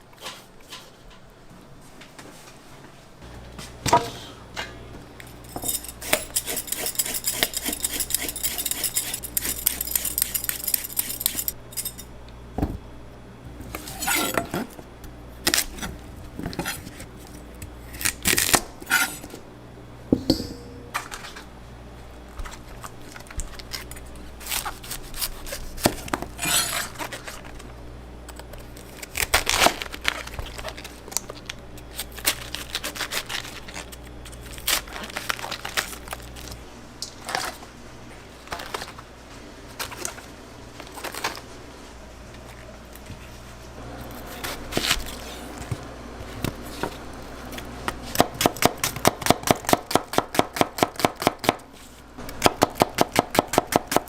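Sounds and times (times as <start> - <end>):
steady low hum: 3.1 - 54.0
metal utensils and dishes clinking: 4.0 - 12.1, 26.4 - 27.2.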